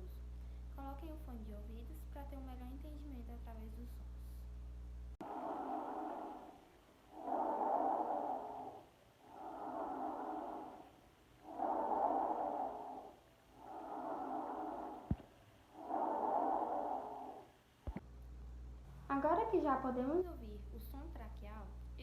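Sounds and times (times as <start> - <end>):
blowing breath sounds: 5.2 - 17.5.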